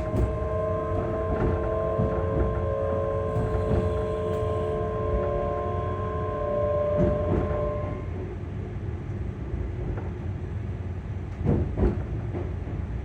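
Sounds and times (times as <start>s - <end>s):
clunks: 0.0s - 5.5s, 6.8s - 8.0s
low rumble: 0.0s - 6.2s
electric train motor whine: 0.0s - 8.4s.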